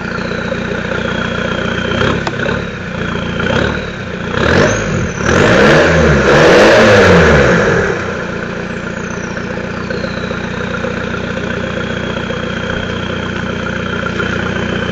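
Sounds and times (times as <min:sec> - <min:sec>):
diesel engine revving and idling: 0:00.0 - 0:14.9.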